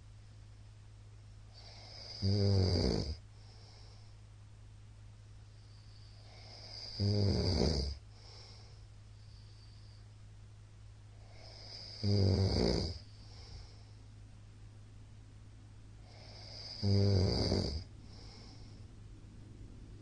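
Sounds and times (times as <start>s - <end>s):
steady low hum: 0.0s - 20.0s
man snoring loudly: 1.5s - 3.2s, 6.2s - 8.5s, 11.2s - 13.7s, 16.0s - 18.6s.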